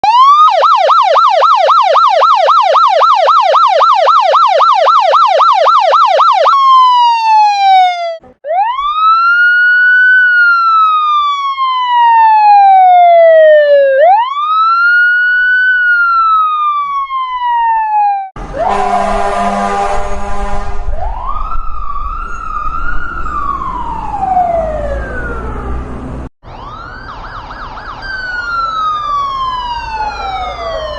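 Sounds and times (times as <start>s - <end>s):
police siren yelping and wailing: 0.0s - 30.9s.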